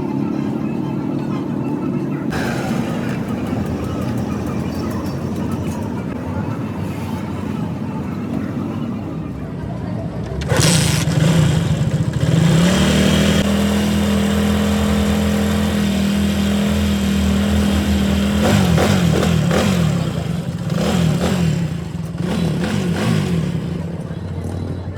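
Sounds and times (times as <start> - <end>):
vehicle engine revving: 2.3 - 6.2, 10.0 - 24.9.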